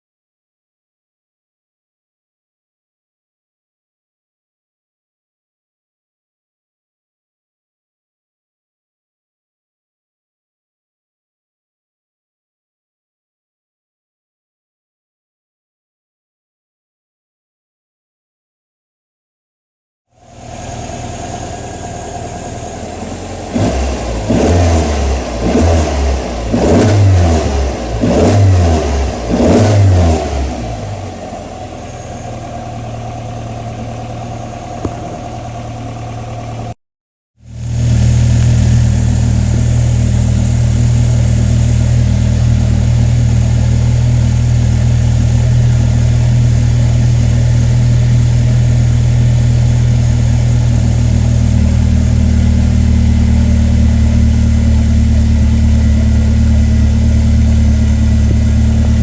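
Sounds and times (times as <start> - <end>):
car engine idling and revving: 20.2 - 36.8, 37.5 - 59.0.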